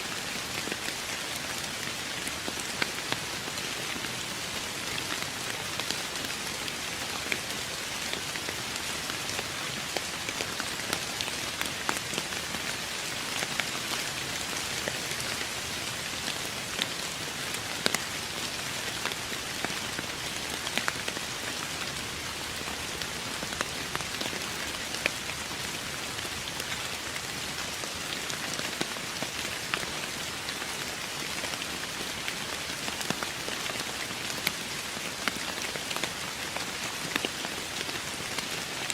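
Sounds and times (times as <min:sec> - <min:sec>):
rain falling: 0:00.0 - 0:38.9
raindrops hitting close by: 0:00.0 - 0:38.9.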